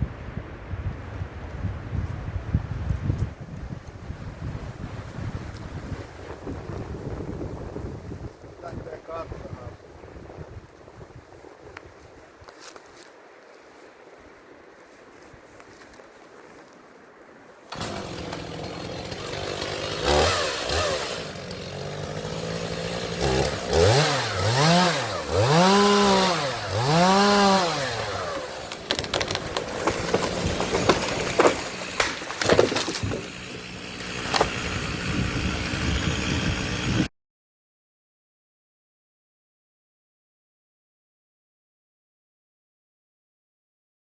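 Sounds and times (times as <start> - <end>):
sharp wood cracks: 17.7 - 36.9
chainsaw revving: 17.7 - 37.1.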